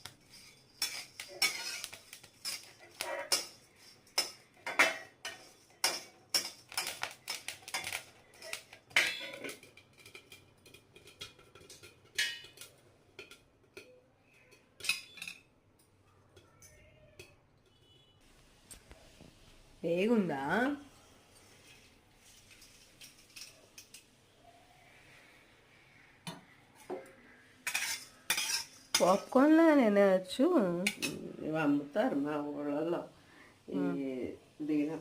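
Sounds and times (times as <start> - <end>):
popcorn popping in a pan: 0.0 - 15.2.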